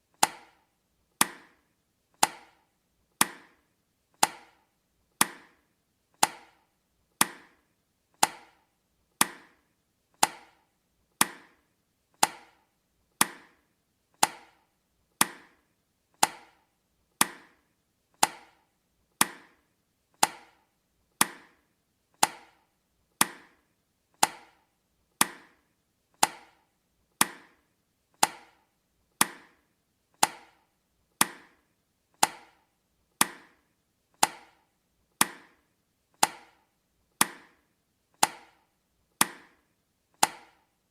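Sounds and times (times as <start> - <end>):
timer ticking clicks: 0.1 - 1.6, 2.2 - 2.6, 4.2 - 5.6, 6.2 - 7.6, 8.2 - 9.6, 10.2 - 11.6, 12.2 - 13.6, 14.2 - 15.6, 16.2 - 17.6, 18.2 - 19.6, 20.2 - 21.6, 22.2 - 23.6, 24.2 - 27.6, 28.2 - 29.6, 30.2 - 31.6, 32.2 - 35.6, 36.2 - 37.6, 38.2 - 39.6, 40.2 - 40.7.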